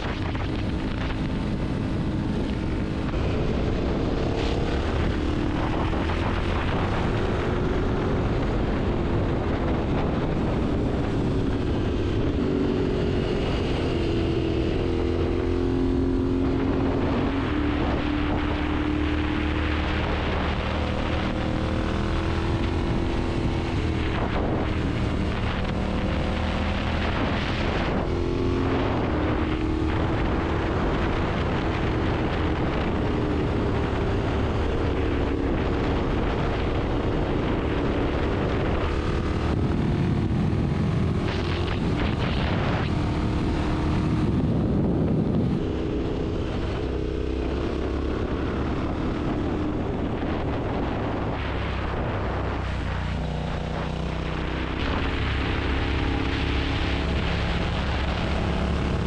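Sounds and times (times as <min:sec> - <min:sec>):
vehicle engines rumbling: 0:00.0 - 0:59.0.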